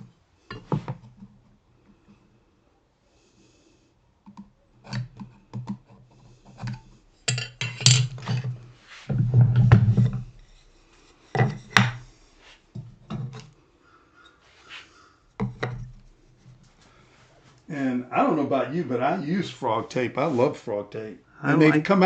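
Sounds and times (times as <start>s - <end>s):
wood scraping: 4.8s - 13.5s
knocks and clicks of tools: 6.6s - 10.4s, 15.4s - 16.1s.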